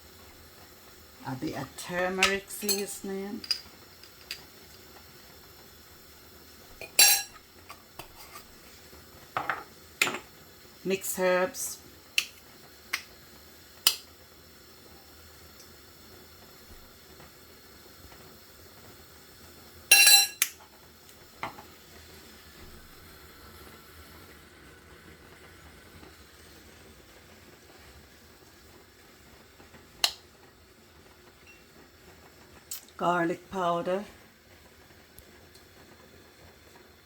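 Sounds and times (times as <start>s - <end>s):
kitchen utensils clicking and clinking: 2.1s - 4.5s, 6.8s - 7.4s, 19.9s - 20.6s
ringing clink of glass or metal: 19.9s - 20.4s.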